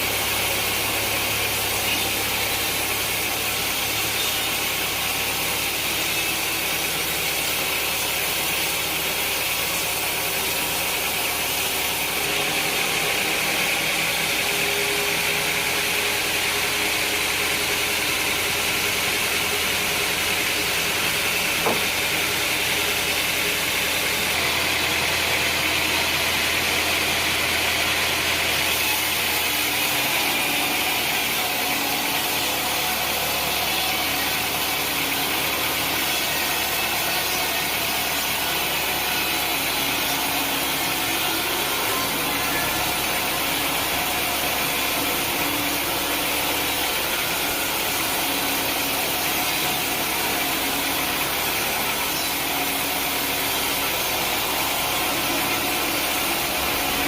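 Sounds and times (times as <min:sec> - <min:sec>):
sawmill machinery humming: 0:00.0 - 0:57.0
short knock: 0:21.6 - 0:22.0.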